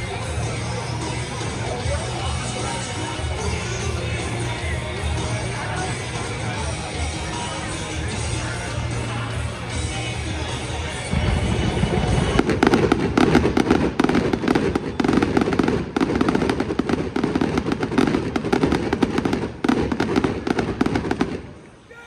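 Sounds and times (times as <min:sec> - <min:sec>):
music: 0:00.0 - 0:13.7
fireworks crackling and popping: 0:10.3 - 0:21.8.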